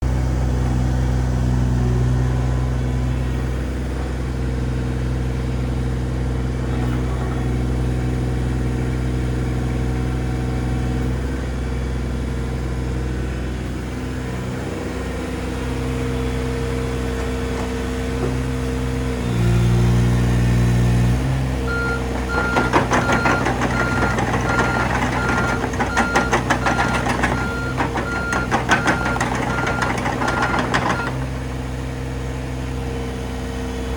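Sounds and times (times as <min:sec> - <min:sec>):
excavator diesel engine running: 0:00.1 - 0:33.9
travel alarm beeping: 0:21.7 - 0:31.2
steel tracks rattling: 0:21.7 - 0:31.6.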